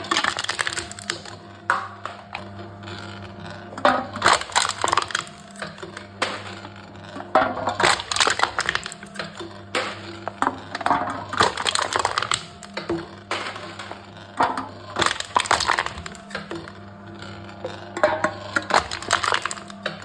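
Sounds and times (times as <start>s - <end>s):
cans crushed by machine: 0.0s - 20.0s.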